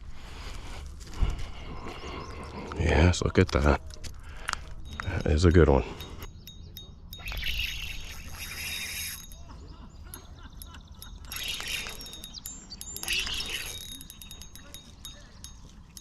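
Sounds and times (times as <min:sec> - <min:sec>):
fishing reel clicking: 0:07.2 - 0:09.4, 0:11.2 - 0:14.8.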